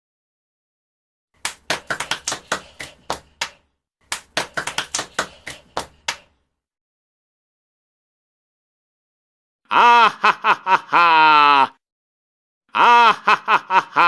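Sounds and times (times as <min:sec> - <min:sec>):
hands clapping: 0:01.4 - 0:06.4.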